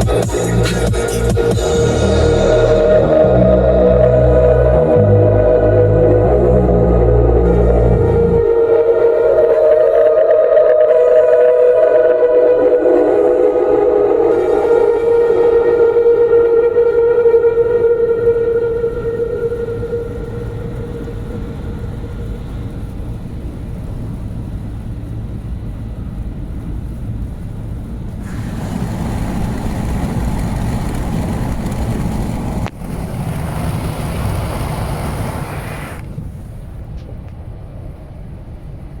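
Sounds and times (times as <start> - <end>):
road and engine noise in cabin: 13.3 - 39.0.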